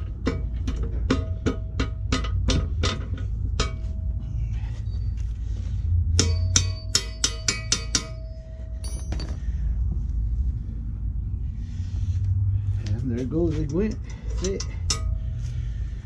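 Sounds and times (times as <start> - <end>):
steady low rumble: 0.0 - 16.0
hammer striking steel: 6.1 - 9.4.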